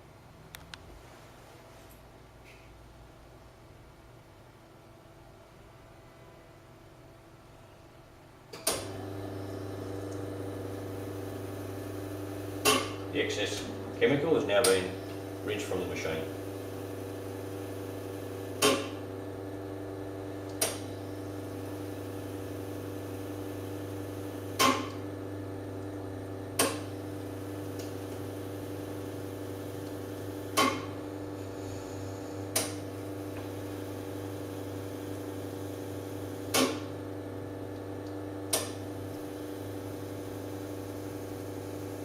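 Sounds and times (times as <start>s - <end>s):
coffee machine humming: 8.7s - 42.0s.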